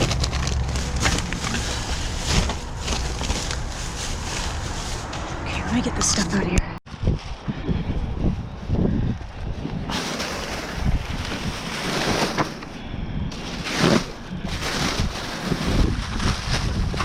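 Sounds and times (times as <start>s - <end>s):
bags rustling: 0.0s - 5.5s, 9.9s - 17.0s
wind buffeting microphone: 1.3s - 11.8s, 12.8s - 17.0s.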